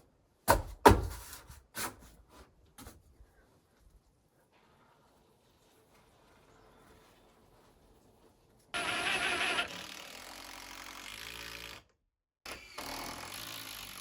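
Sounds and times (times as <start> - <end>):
electric power tool whirring: 8.8 - 11.9, 12.5 - 14.0.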